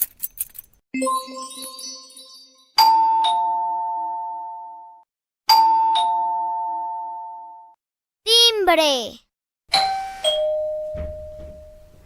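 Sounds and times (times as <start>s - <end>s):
ding-dong doorbell chime: 9.7s - 12.0s.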